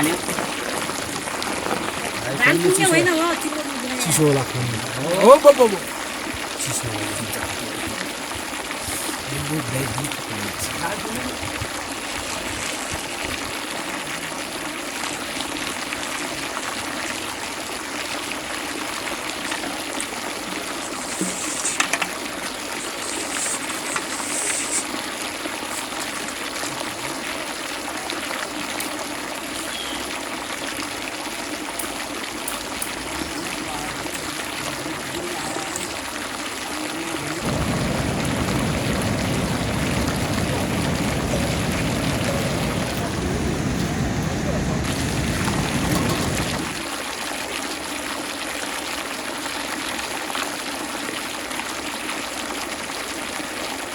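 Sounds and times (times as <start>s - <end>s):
steady rain: 0.0s - 53.9s
water trickling: 0.0s - 53.9s
deep rushing sound: 37.4s - 46.8s.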